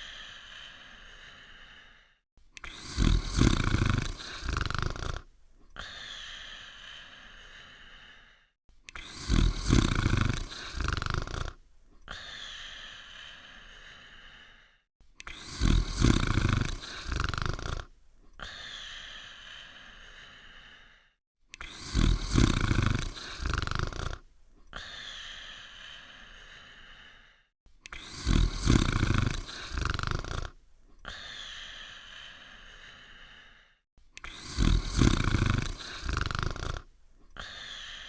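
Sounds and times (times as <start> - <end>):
dog snoring: 2.6 - 6.0, 9.0 - 12.3, 15.2 - 18.7, 21.6 - 25.0, 27.9 - 31.3, 34.2 - 38.0.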